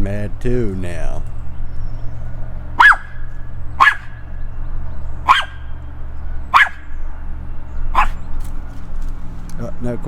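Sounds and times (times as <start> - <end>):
dog barking: 2.8 - 3.2, 3.8 - 4.2, 5.2 - 5.7, 6.5 - 6.9, 7.9 - 8.2.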